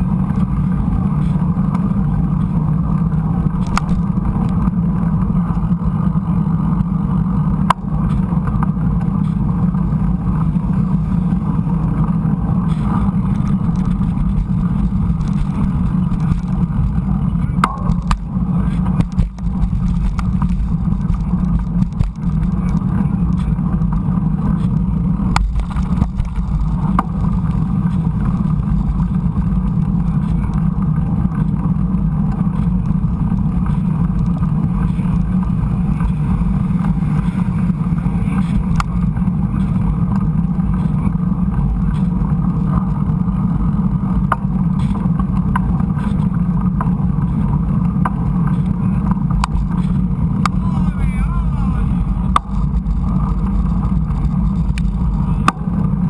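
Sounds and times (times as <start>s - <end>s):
bike clicks and rattles: 0.0s - 56.0s
bike tyres rumbling on dirt: 0.0s - 56.0s
wind on microphone: 0.0s - 56.0s.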